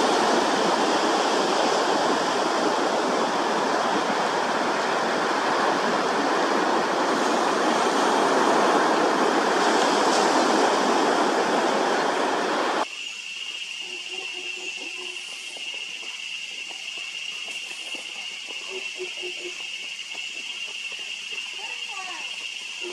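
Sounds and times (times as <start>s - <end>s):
rushing water roar: 0.0s - 12.9s, 13.8s - 22.9s
high-pitched drone: 12.9s - 22.9s.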